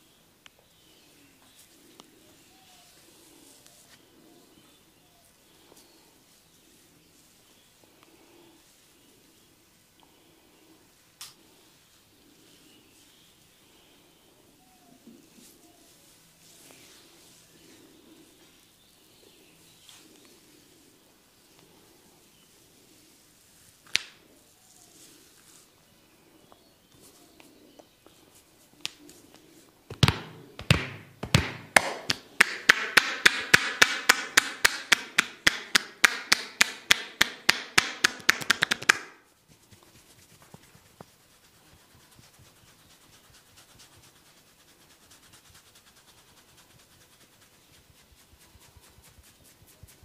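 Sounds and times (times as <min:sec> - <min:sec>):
faint rubbing: 0:00.8 - 0:31.1, 0:38.6 - 0:50.0
hands slapping head in massage: 0:23.8 - 0:24.2, 0:28.8 - 0:29.2, 0:29.9 - 0:39.2.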